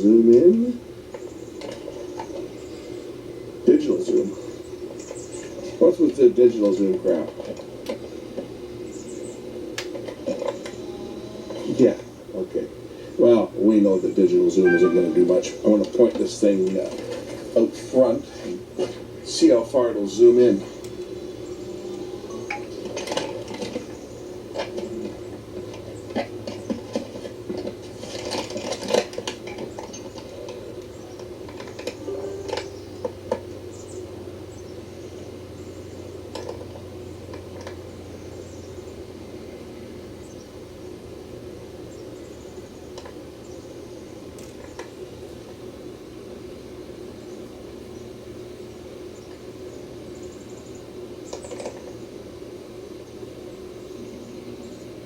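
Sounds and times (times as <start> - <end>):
low hum and hiss: 0.0 - 55.0
faint high chirps: 14.6 - 15.6, 32.0 - 33.3
steady low hum: 30.7 - 42.7.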